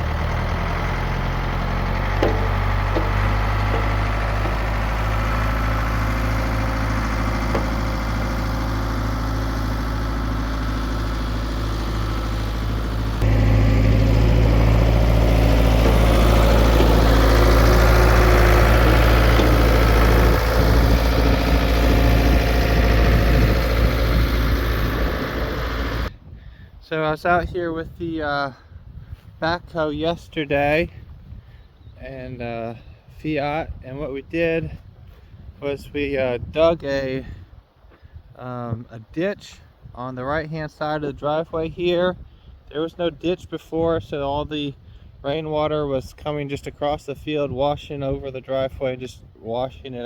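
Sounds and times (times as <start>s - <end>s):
diesel engine running: 0.0s - 26.1s.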